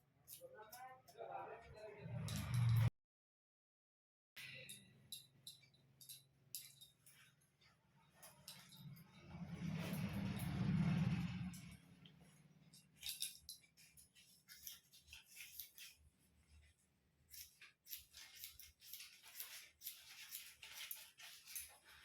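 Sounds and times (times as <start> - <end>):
scissors snipping hair: 13.0 - 16.0, 17.3 - 21.8.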